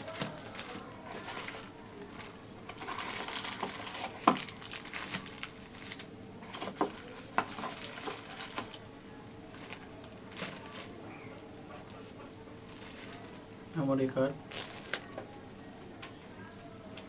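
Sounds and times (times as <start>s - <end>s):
packaging crinkling and rustling: 0.0s - 8.9s, 9.5s - 11.0s, 12.7s - 13.4s, 14.4s - 15.2s.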